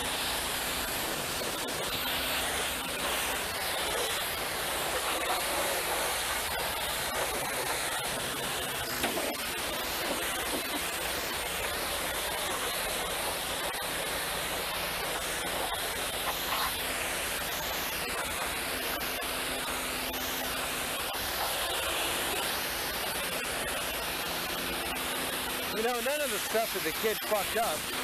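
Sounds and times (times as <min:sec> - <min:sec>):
water spray hissing: 0:00.0 - 0:28.0.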